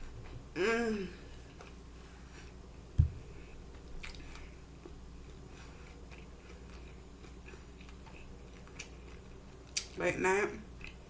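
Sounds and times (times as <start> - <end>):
person chewing crispy food: 3.4 - 10.0, 10.7 - 11.0.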